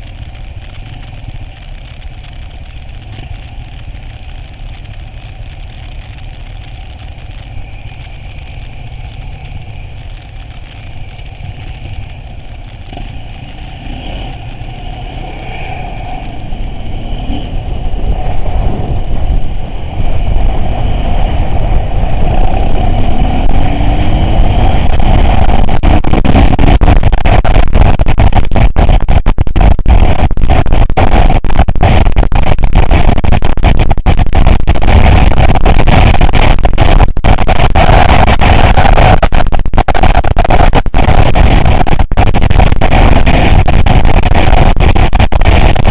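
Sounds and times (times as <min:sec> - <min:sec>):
off-road vehicle engine running: 0:00.0 - 0:45.9
wind buffeting microphone: 0:16.6 - 0:30.2.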